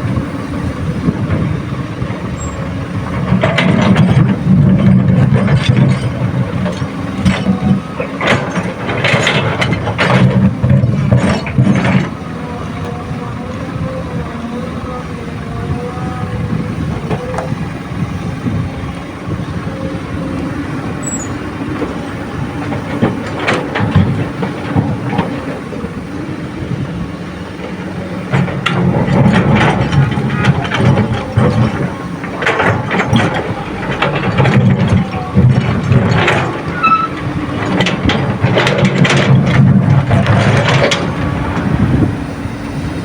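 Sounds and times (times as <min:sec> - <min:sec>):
excavator diesel engine running: 0:00.0 - 0:43.0
rock clattering against steel: 0:28.3 - 0:41.8.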